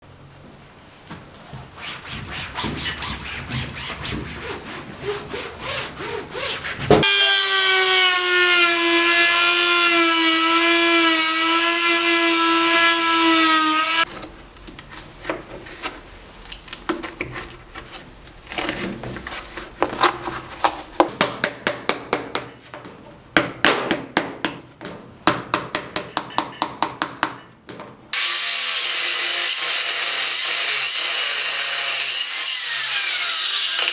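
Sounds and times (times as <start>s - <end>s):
small power tool whine: 7.0s - 14.1s, 28.2s - 33.9s.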